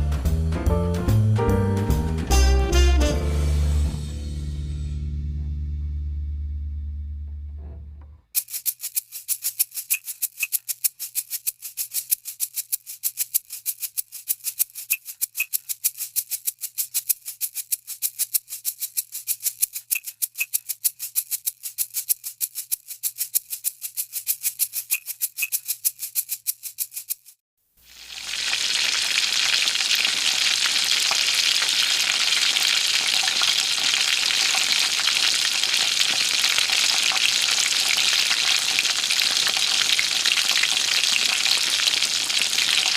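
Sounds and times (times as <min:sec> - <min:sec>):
shaker rhythm: 0:08.3 - 0:27.4, 0:28.2 - 0:42.9.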